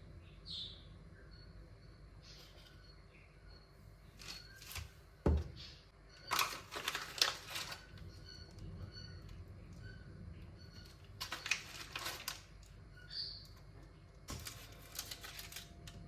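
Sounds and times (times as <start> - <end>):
faint chirps: 0.0 - 6.4
objects clicking and rustling: 6.3 - 8.0, 11.1 - 12.8, 14.3 - 16.0.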